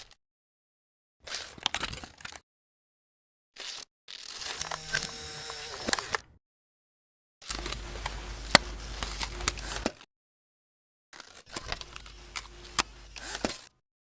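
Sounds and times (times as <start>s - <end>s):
paper tearing: 7.5s - 9.9s, 11.3s - 13.6s.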